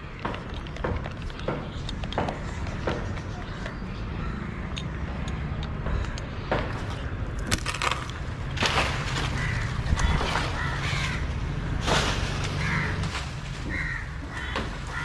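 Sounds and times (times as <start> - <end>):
sharp knocks and crackles: 0.0 - 3.8, 4.8 - 15.0.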